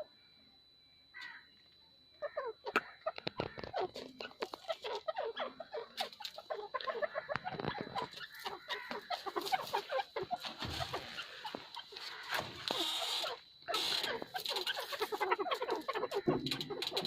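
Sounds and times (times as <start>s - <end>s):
francolin clucking calls: 2.2s - 17.0s.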